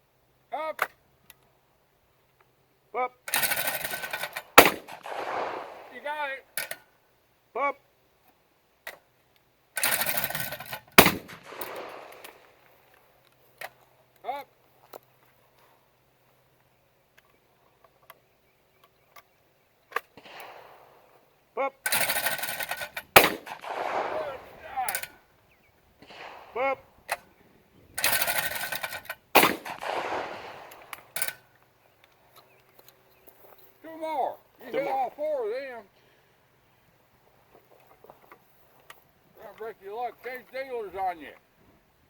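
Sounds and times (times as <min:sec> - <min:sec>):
metallic clicking and rattling: 0:03.3 - 0:05.2, 0:09.8 - 0:12.4, 0:21.9 - 0:23.9, 0:28.0 - 0:30.0, 0:30.7 - 0:31.4
shotgun shot with echo: 0:03.9 - 0:06.2, 0:11.0 - 0:12.5, 0:20.2 - 0:21.2, 0:23.1 - 0:25.1, 0:26.0 - 0:26.8, 0:29.4 - 0:31.2.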